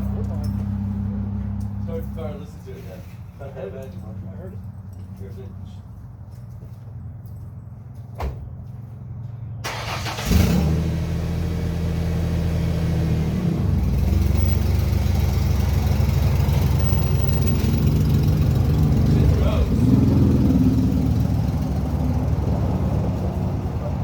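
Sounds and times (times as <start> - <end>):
engine idling: 9.2 - 10.4, 11.0 - 24.0
engine cranking and starting: 9.6 - 11.2.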